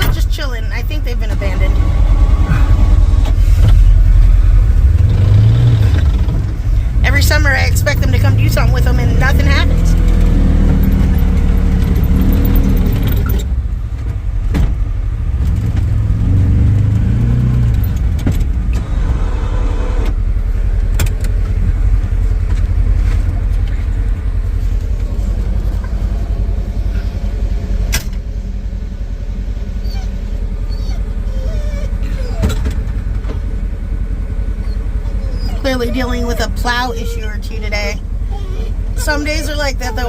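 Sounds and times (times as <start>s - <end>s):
vehicle engine rumbling: 0.0s - 40.0s.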